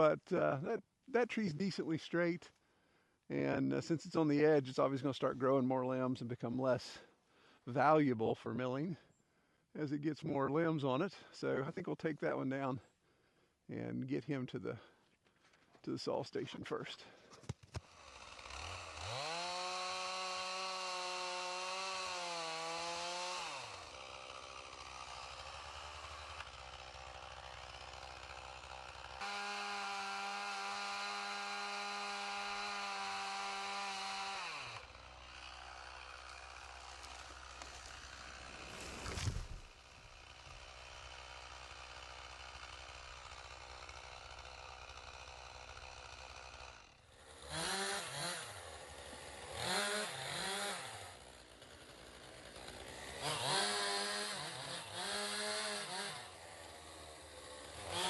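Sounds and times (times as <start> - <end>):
chainsaw revving and idling: 17.8 - 58.0.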